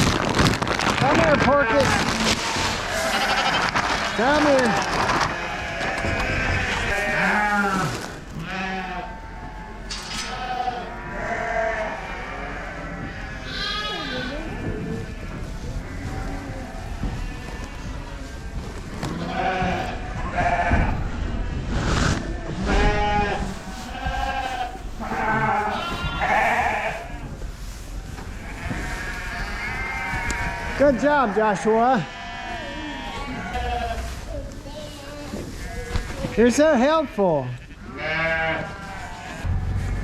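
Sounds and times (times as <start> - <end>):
sheep bleating: 1.4 - 14.6, 19.1 - 21.0, 22.6 - 27.2, 28.4 - 34.2, 35.5 - 40.0
low rumble: 39.4 - 40.0.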